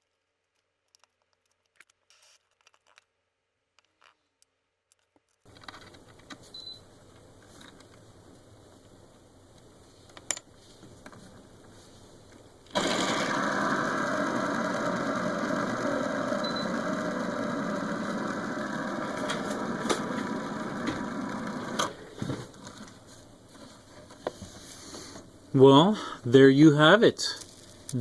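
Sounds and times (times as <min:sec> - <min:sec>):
spinner stopping click: 0:12.7 - 0:22.0
hand spinner gears whirring: 0:12.7 - 0:22.2.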